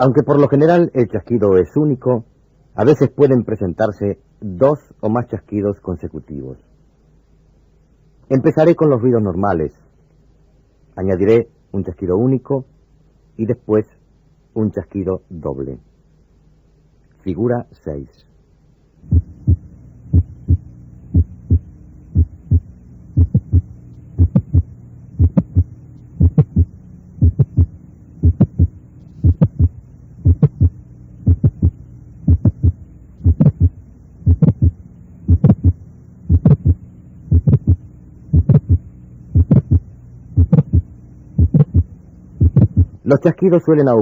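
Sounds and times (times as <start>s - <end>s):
steady low hum: 0.0s - 44.0s
heartbeat through stethoscope: 19.0s - 43.0s
systolic heart clicks: 19.1s - 43.0s.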